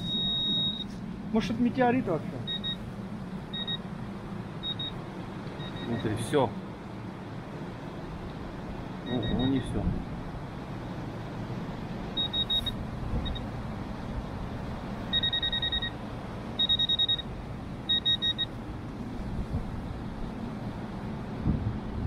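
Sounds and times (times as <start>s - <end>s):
metal detector beeping: 0.0s - 0.9s, 2.5s - 2.8s, 3.5s - 3.8s, 4.6s - 5.0s, 9.1s - 9.6s, 12.2s - 13.5s, 15.1s - 16.0s, 16.6s - 17.3s, 17.9s - 18.5s.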